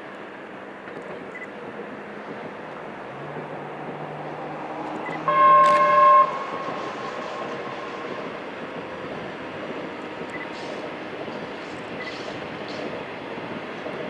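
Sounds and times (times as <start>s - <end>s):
passing train running noise: 0.0s - 14.0s
electric locomotive horn: 4.0s - 11.2s.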